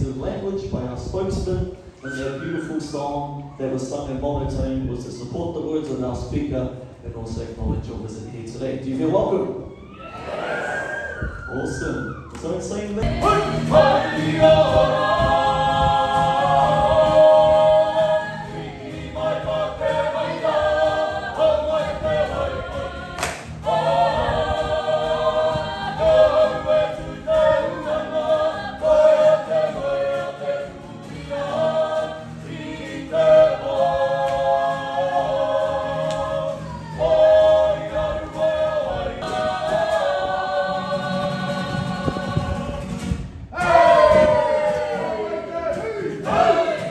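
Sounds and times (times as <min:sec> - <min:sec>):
choir singing in harmony: 0:13.0 - 0:46.9.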